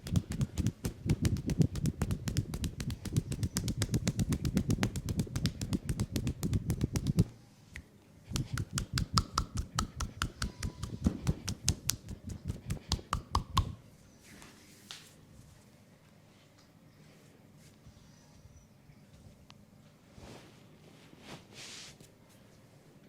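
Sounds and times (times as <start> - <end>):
rapid hand strikes on leg: 0.0 - 7.3, 8.3 - 13.8.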